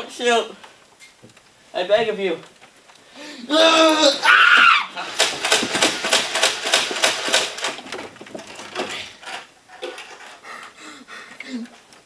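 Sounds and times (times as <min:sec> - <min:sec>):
toy dart blasters firing: 0:05.1 - 0:07.9.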